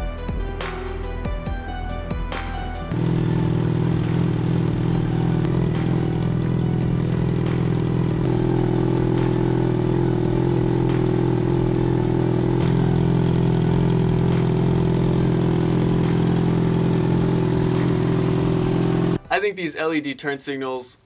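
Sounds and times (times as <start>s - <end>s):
motorcycle engine idling: 2.9s - 19.2s.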